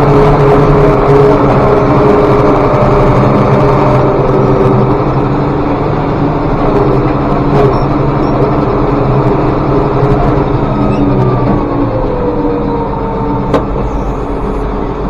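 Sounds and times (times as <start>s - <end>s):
tractor engine running: 0.0s - 15.0s.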